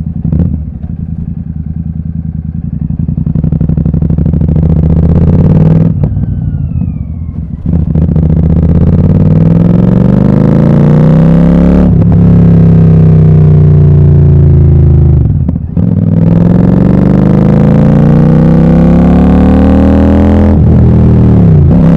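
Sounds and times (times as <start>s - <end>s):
exhaust crack: 0.0s - 1.8s, 5.8s - 9.6s
motorcycle engine revving: 0.0s - 21.9s.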